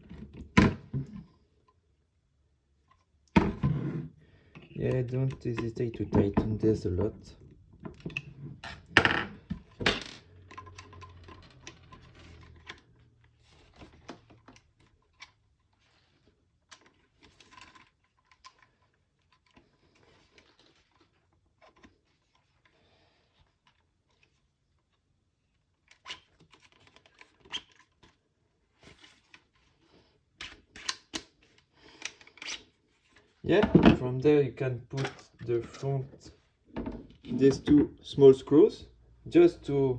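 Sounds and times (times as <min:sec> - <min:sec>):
small parts and tools clicking: 0:08.0 - 0:12.9.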